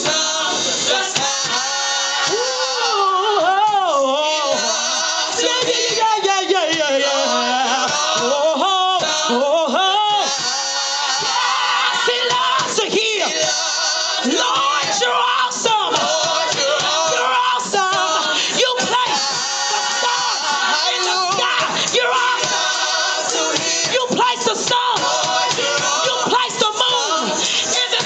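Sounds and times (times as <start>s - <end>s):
gospel choir singing: 0.0s - 28.0s.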